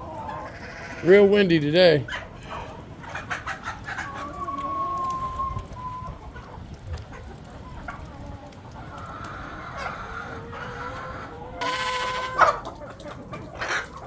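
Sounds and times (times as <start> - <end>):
chickens clucking: 0.0 - 14.0
rooster crowing: 11.6 - 12.6.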